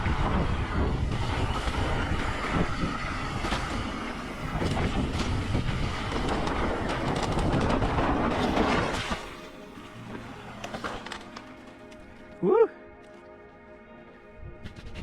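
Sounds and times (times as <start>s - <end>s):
wind buffeting microphone: 0.0s - 10.5s, 14.3s - 15.0s
bike rattling and knocking: 1.0s - 9.4s
tyres on dirt: 1.3s - 12.4s.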